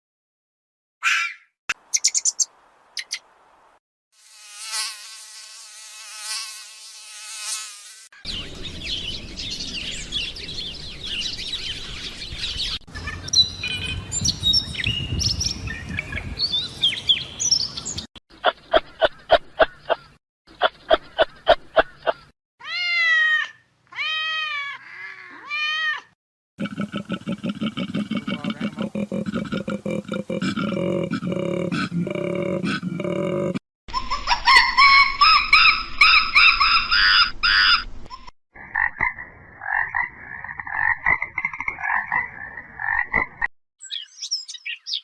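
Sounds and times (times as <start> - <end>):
insect buzzing: 4.2 - 8.2
birdsong chorus: 8.2 - 22.3, 38.7 - 45.0
cat meowing: 22.6 - 26.2.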